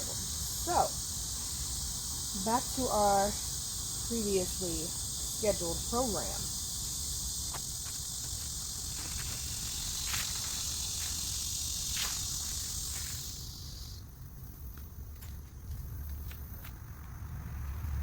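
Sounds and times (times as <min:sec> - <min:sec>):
insects droning: 0:00.0 - 0:18.0.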